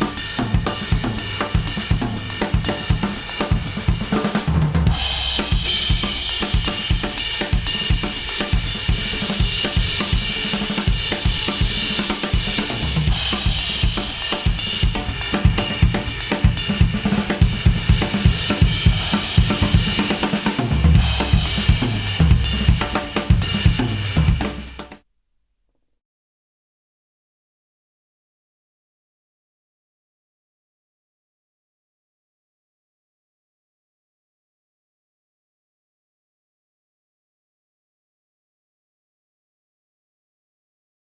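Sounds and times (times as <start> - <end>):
instrumental music with drum beat: 0.0 - 25.0.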